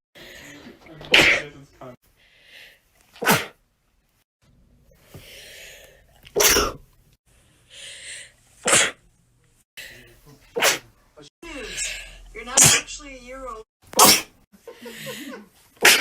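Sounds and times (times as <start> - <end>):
drawn-in breath: 2.1 - 2.9, 4.9 - 6.1, 7.3 - 8.4
person sneezing: 3.2 - 3.6, 6.4 - 6.8, 8.6 - 9.0, 10.5 - 10.9, 14.0 - 14.4, 15.8 - 16.0.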